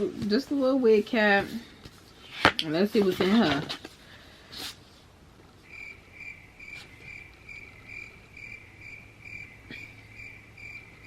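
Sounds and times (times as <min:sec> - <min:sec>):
cricket chirping: 0:05.6 - 0:11.0.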